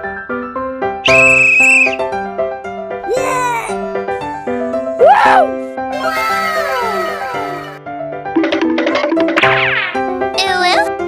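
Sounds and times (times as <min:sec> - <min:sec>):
shrill whistle-like tone: 0:01.0 - 0:02.1
background music with short notes: 0:07.7 - 0:11.0.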